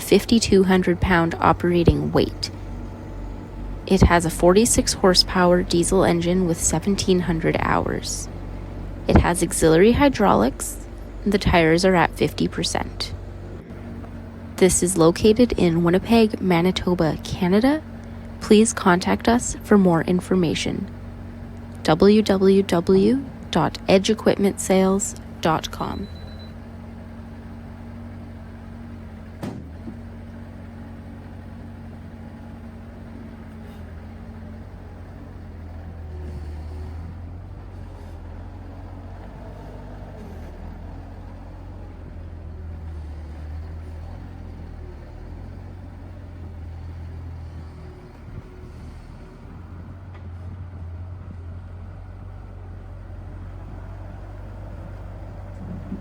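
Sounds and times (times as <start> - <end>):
diesel engine running: 0.0 - 56.0.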